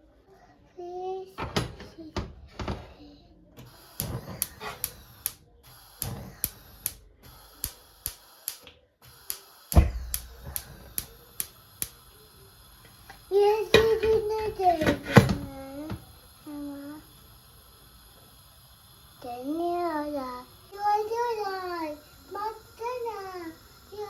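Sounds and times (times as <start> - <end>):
heavy thump: 9.8 - 10.4.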